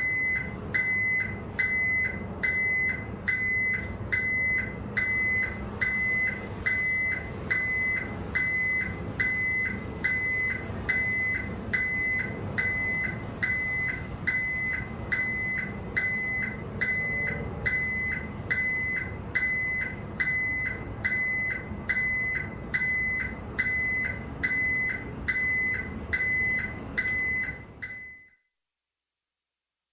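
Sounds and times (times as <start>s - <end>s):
truck engine running: 0.0s - 27.8s
truck back-up alarm beeping: 0.0s - 28.4s.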